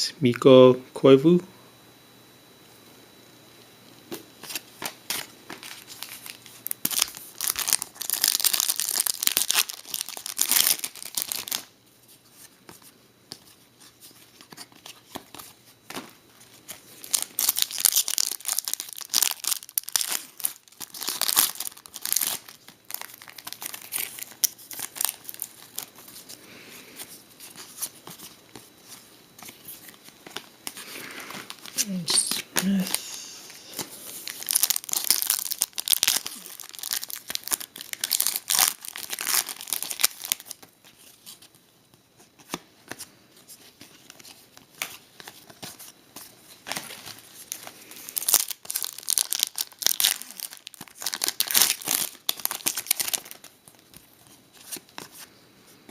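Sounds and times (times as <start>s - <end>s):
foil wrappers tearing and crinkling: 4.4s - 11.7s, 14.4s - 26.4s, 29.4s - 33.0s, 33.7s - 41.4s, 43.8s - 55.3s.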